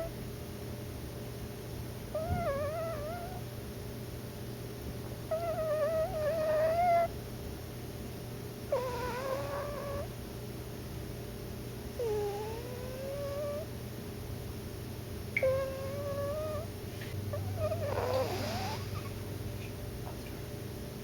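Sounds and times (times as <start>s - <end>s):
cat snoring with whistles: 2.2s - 3.4s, 5.3s - 7.1s, 8.7s - 10.1s, 12.0s - 13.7s, 15.4s - 16.7s, 17.3s - 19.2s.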